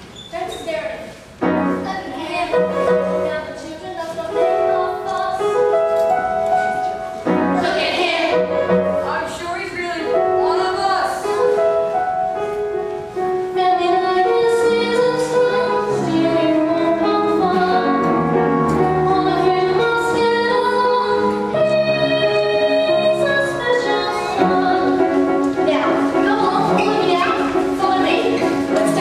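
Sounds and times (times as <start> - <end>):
group singing musical song: 7.5 - 8.8, 13.6 - 29.0.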